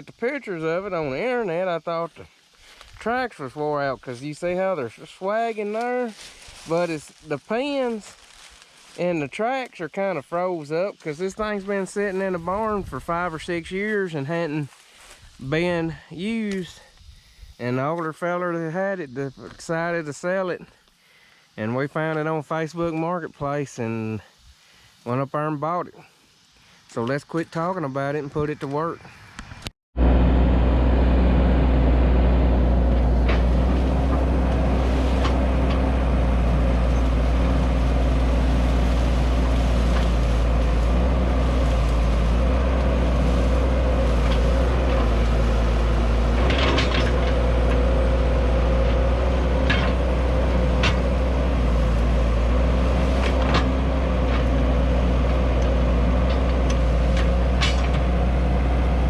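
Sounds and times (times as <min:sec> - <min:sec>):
excavator diesel engine running: 0:30.0 - 0:59.0
sharp metallic clanks: 0:49.6 - 0:50.1, 0:57.1 - 0:58.1.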